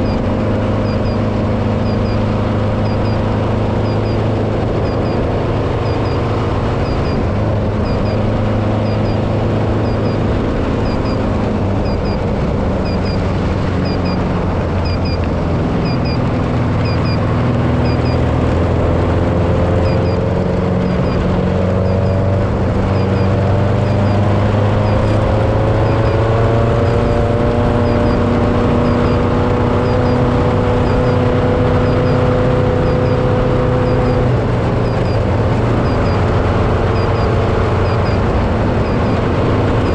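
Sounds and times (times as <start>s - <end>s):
race car engine running: 0.0s - 39.9s
rush of driving noise: 0.0s - 39.9s
high double chirp: 14.8s - 15.2s.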